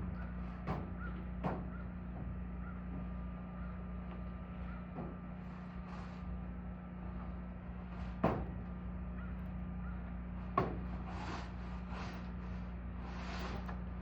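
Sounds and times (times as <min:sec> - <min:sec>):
steady low hum: 0:00.0 - 0:14.0
sharp knocks: 0:00.6 - 0:01.8.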